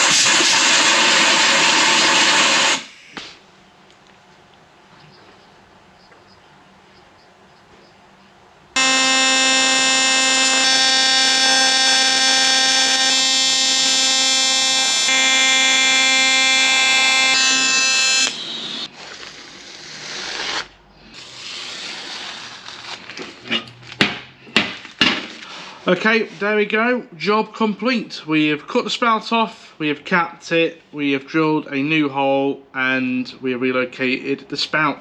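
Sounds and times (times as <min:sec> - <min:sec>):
welding arc buzzing: 0:00.0 - 0:03.0, 0:08.8 - 0:22.7.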